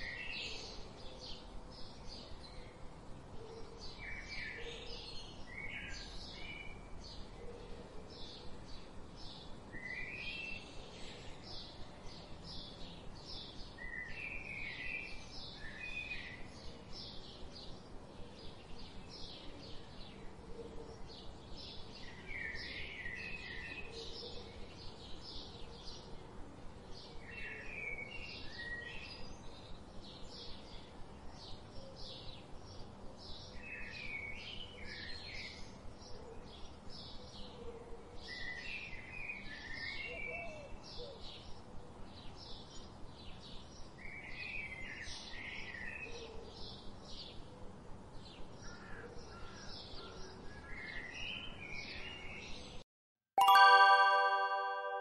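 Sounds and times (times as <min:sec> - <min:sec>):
short high bird chirps: 0:53.4 - 0:55.0.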